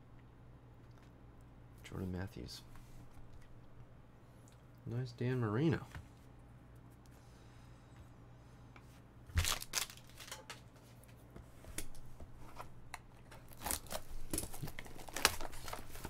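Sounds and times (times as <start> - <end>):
card wrappers crinkling: 9.4 - 10.6, 13.2 - 16.0.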